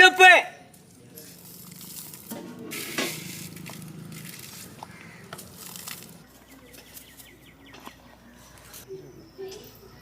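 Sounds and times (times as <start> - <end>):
hot oil crackling: 1.3 - 6.3.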